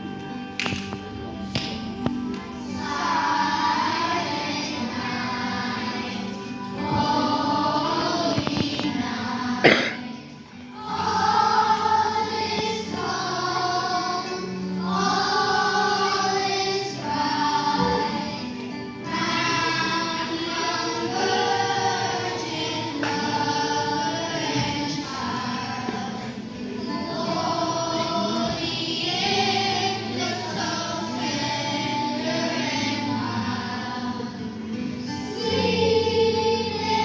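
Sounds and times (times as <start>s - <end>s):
choir singing: 1.2s - 37.0s.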